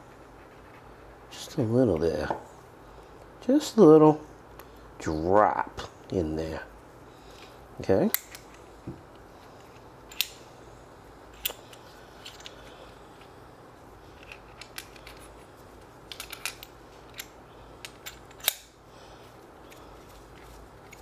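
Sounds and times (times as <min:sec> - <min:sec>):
tools and metal parts clicking: 0:16.1 - 0:18.7.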